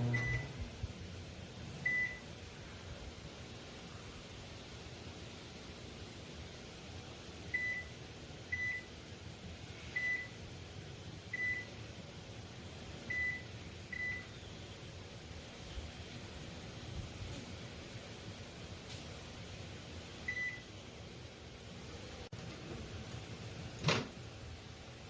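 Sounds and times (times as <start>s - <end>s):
microwave oven beeping: 0.0s - 0.8s, 1.8s - 2.4s, 7.5s - 9.0s, 9.8s - 10.5s, 11.3s - 11.8s, 13.0s - 14.6s, 20.2s - 20.8s
low steady hum: 0.0s - 25.0s.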